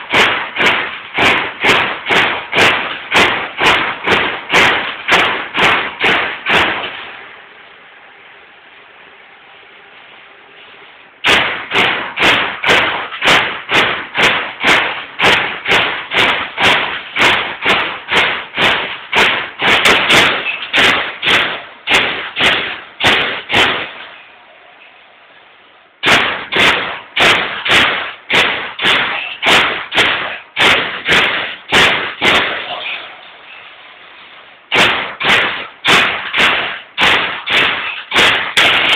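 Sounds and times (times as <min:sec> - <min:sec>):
punch press hitting sheet metal: 0:00.0 - 0:07.1, 0:11.2 - 0:24.2, 0:26.0 - 0:32.9, 0:34.7 - 0:38.9.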